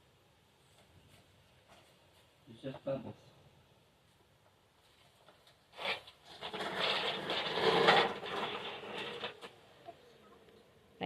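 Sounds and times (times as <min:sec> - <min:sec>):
toy lawnmower rattling: 0:05.8 - 0:09.5.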